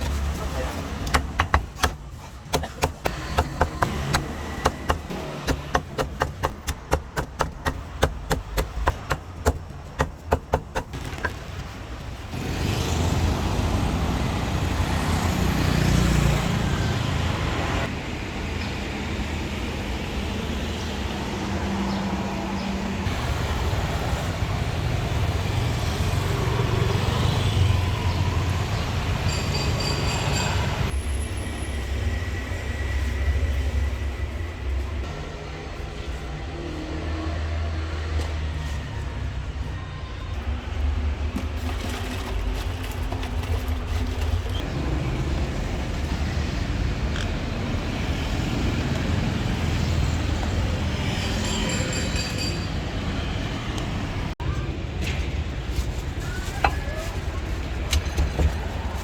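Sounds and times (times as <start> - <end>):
street traffic noise: 0.0 - 59.0
cleaver chopping on a board: 1.0 - 11.0.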